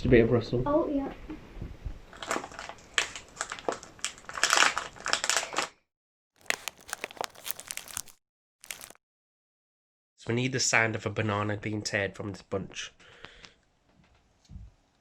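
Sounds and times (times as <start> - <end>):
crisp packet crinkling: 3.4 - 5.7, 6.4 - 9.0.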